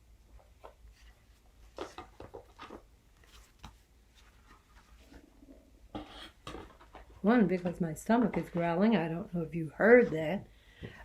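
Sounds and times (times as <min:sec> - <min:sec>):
quiet room hum: 0:00.0 - 0:11.0
paper rustling and tapping: 0:00.6 - 0:04.7.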